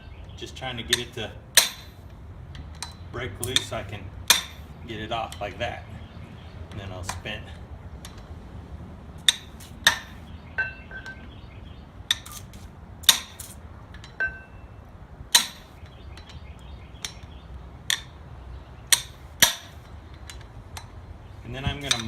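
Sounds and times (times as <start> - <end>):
hammer striking metal bar: 0.9 - 2.0, 4.3 - 4.7, 9.2 - 11.2, 12.1 - 14.6, 15.3 - 15.8, 18.9 - 19.8.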